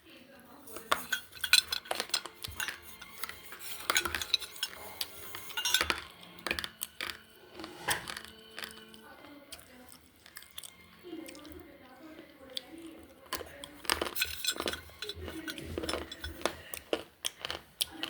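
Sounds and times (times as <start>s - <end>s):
slate pencils clicking together: 0.7s - 7.3s, 7.9s - 9.0s, 13.3s - 18.0s.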